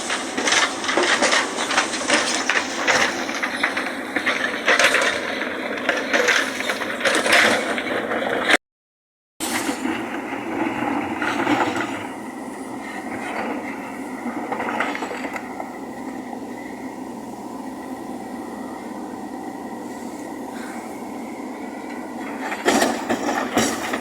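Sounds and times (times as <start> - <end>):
diesel engine running: 0.0 - 8.6, 9.4 - 24.0
loader grinding: 0.0 - 8.6, 9.4 - 24.0
faint steady whine: 9.4 - 24.0.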